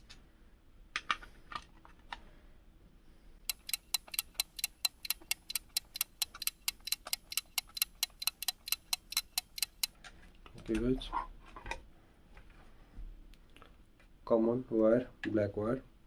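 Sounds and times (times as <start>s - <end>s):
multimeter dial clicking: 3.5s - 10.0s.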